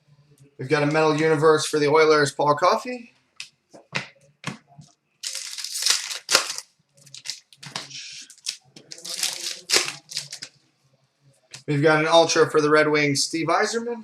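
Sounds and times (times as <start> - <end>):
plastic crinkling: 5.2 - 10.6.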